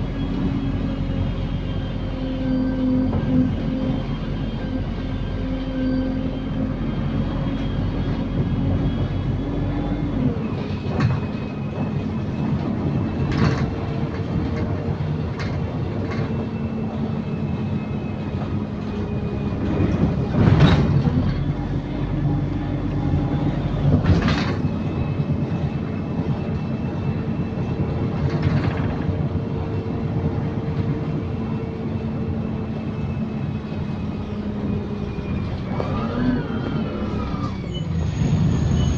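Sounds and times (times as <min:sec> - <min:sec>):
bus engine drone: 0:00.0 - 0:38.9
drivetrain whine: 0:00.0 - 0:38.9
interior rattles and knocks: 0:19.6 - 0:21.4.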